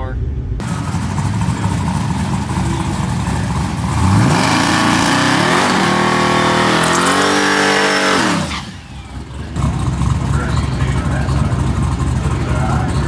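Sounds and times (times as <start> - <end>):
drag car engine accelerating: 0.6 - 13.0.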